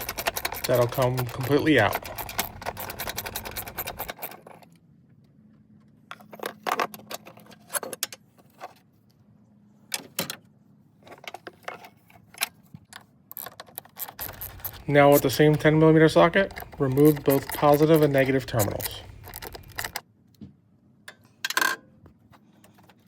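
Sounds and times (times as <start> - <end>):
ratchet clicking rapidly: 0.0 - 4.4, 14.2 - 20.0
metallic clinks and knocks: 13.3 - 20.0.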